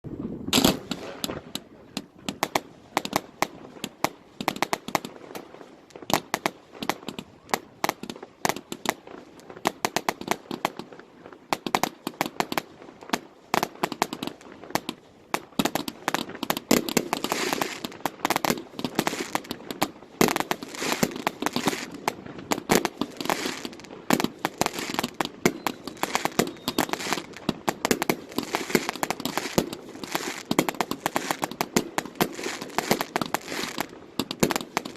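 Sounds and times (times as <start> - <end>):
fireworks crackling: 0.1 - 34.9
firework shell bursts: 0.5 - 1.6, 15.6 - 34.9.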